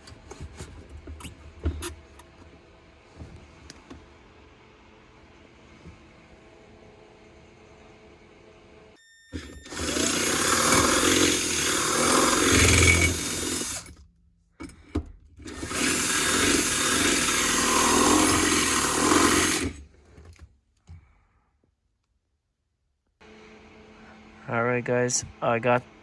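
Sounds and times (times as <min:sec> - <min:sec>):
power drill boring through metal: 0:09.3 - 0:14.0, 0:15.4 - 0:19.8.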